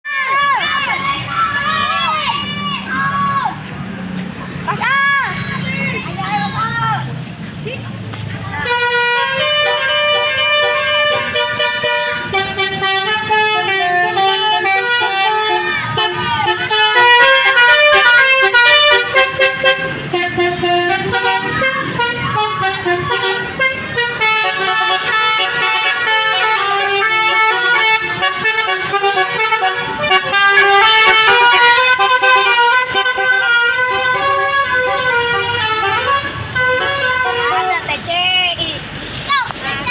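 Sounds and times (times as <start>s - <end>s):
musical air horn melody: 8.6s - 37.8s.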